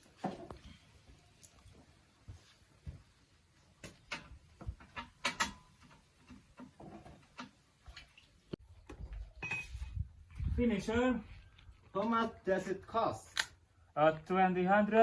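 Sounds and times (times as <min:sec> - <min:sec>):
tools knocking and clicking: 0:03.8 - 0:07.6.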